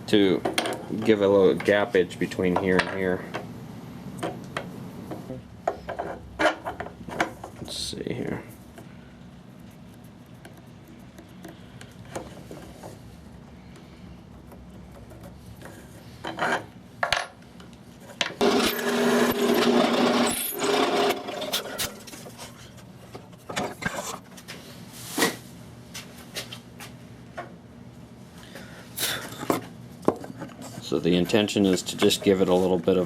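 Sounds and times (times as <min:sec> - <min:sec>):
wood knocks and scraping: 0:23.1 - 0:24.3.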